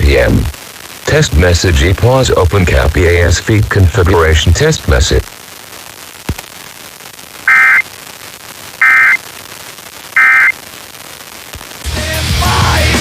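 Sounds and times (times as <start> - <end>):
warbling two-tone digital bursts: 7.5 - 7.8, 8.8 - 9.2, 10.2 - 10.5
rock music: 11.8 - 13.0.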